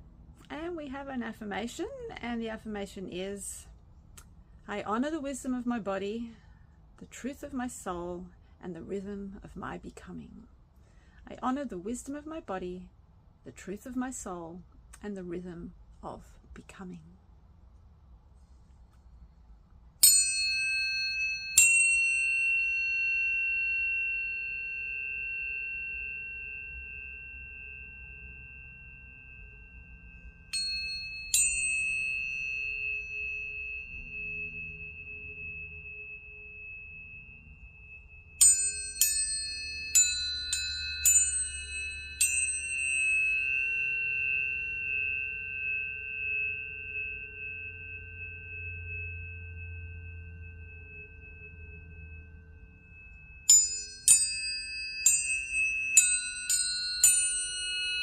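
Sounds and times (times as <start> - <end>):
tuning fork ringing tone: 20.0 - 58.0.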